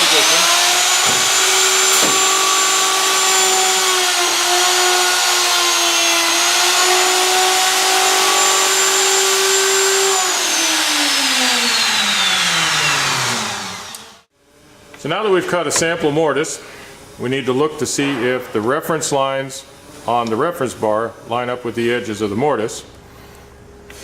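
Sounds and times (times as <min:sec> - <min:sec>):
router whining and winding down: 0:00.0 - 0:14.3.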